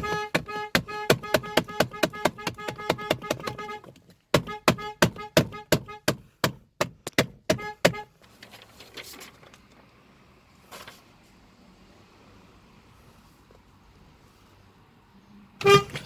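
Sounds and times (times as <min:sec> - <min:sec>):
car horn short beeps: 0:00.0 - 0:06.1, 0:15.6 - 0:16.0
faint background noise: 0:00.0 - 0:16.0.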